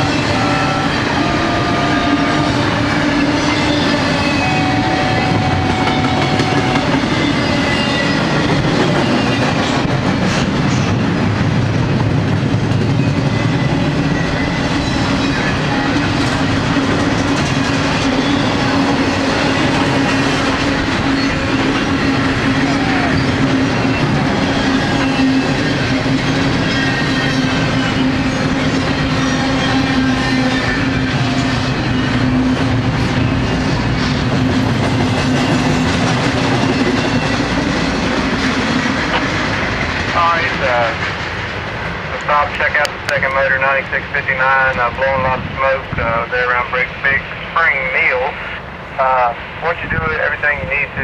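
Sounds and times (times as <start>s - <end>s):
steady high tone: 0.0s - 8.2s
train wheels rumbling on rail: 0.0s - 51.0s
wheels clacking over rail joints: 33.8s - 43.3s.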